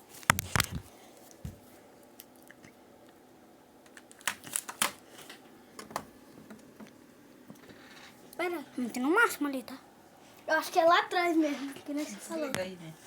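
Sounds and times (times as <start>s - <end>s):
rustling handling noises: 0.0s - 2.2s.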